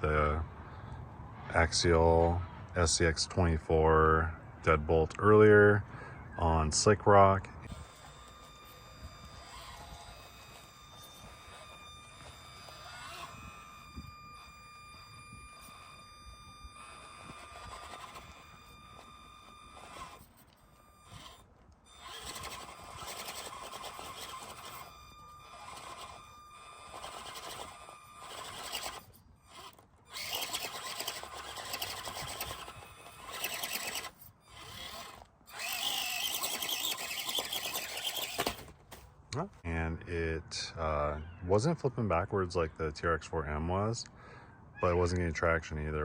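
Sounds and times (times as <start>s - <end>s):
toy car electric motor: 7.6s - 39.0s.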